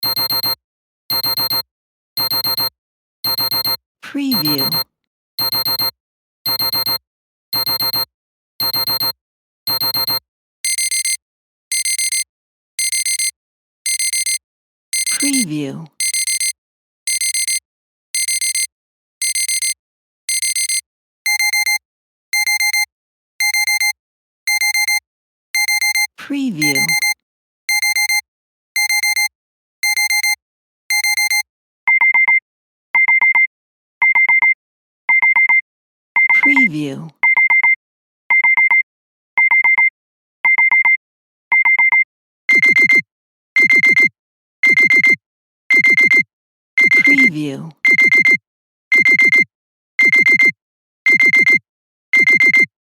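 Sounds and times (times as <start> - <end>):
digital alarm clock beeping: 0.0 - 1.6, 2.2 - 4.8, 5.4 - 12.2, 12.8 - 13.3, 13.9 - 14.4, 15.0 - 15.4, 16.0 - 17.6, 18.2 - 21.8, 22.4 - 25.0, 25.6 - 28.2, 28.8 - 32.4, 33.0 - 35.6, 39.4 - 39.9, 40.5 - 43.0, 43.6 - 46.2, 46.8 - 51.6, 52.2 - 52.7
high-pitched alarm beep: 0.0 - 1.6, 2.2 - 4.8, 5.4 - 5.9, 6.5 - 7.0, 7.6 - 9.1, 9.7 - 12.2, 12.8 - 13.3, 13.9 - 14.4, 15.0 - 15.4, 16.0 - 16.5, 17.1 - 17.6, 18.2 - 21.8, 22.4 - 23.9, 24.5 - 25.0, 25.6 - 28.2, 28.8 - 31.4, 42.5 - 43.0, 43.6 - 46.2, 46.8 - 47.3, 47.9 - 49.4, 50.0 - 50.5, 51.1 - 51.6, 52.2 - 52.7.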